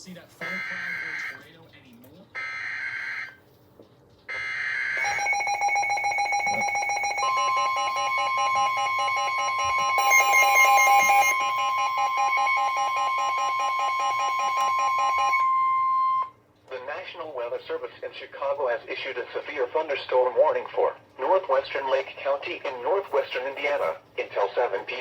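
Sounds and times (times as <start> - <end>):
rapid electronic alarm beeping: 0.4 - 1.4, 2.4 - 3.4, 4.3 - 16.3
steady warning alarm tone: 0.4 - 1.5, 2.4 - 3.4, 4.3 - 16.4
data burst: 4.8 - 13.6.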